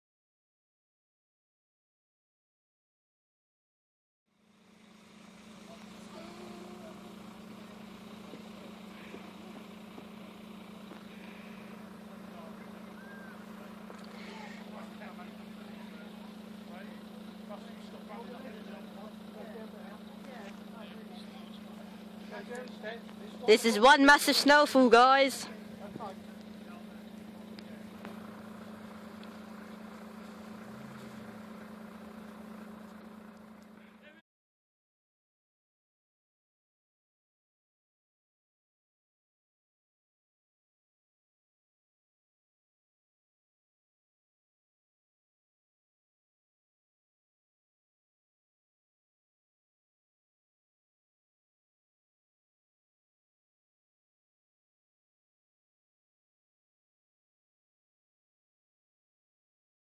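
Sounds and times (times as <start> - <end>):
low mechanical hum: 4.3 - 34.2.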